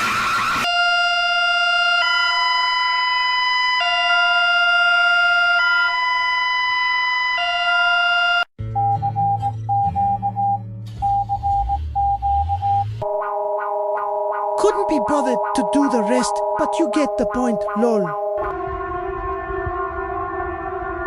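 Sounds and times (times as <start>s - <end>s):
hi-lo alert siren: 0.1s - 8.5s, 12.0s - 21.0s
broken beeping tone: 11.1s - 18.5s
noisy warbling alarm: 13.0s - 21.0s.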